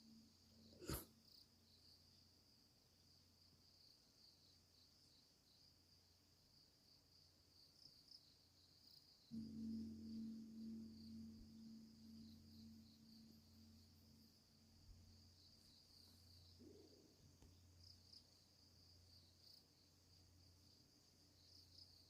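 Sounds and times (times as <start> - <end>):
crickets chirring: 0.0 - 22.0
temple bell hum: 9.4 - 15.6.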